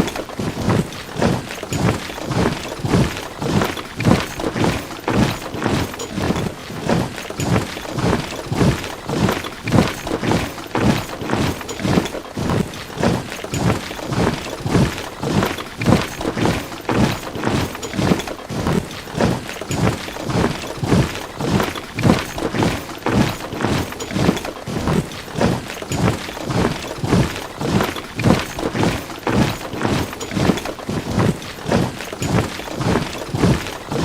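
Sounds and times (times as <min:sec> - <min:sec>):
soldiers marching in step: 0:00.0 - 0:34.0.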